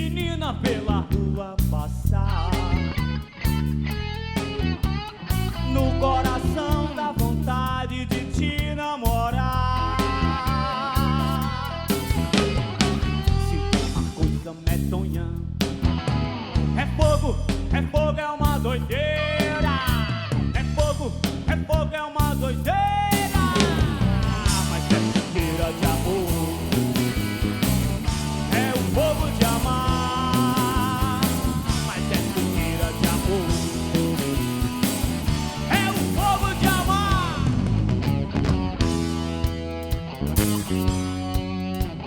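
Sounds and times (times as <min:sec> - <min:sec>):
bass and drums beat: 0:00.0 - 0:42.0
lead guitar melody: 0:24.3 - 0:42.0.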